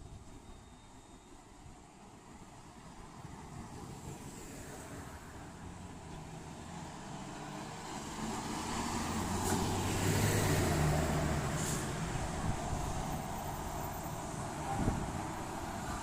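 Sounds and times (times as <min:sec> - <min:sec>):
vehicle engine rumble: 0:05.3 - 0:16.0.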